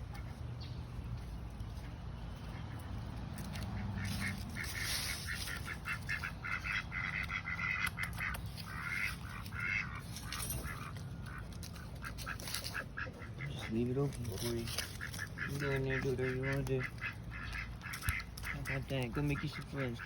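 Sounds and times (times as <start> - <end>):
ducks quacking: 0.0 - 20.0.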